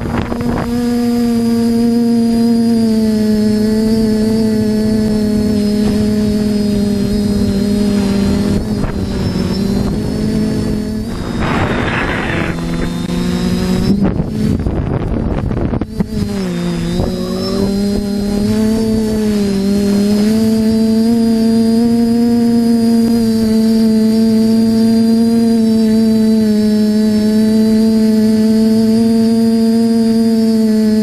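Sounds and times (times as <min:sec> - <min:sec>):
wind noise: 0:00.0 - 0:02.2, 0:03.1 - 0:21.7
drone motors whining: 0:00.0 - 0:31.0.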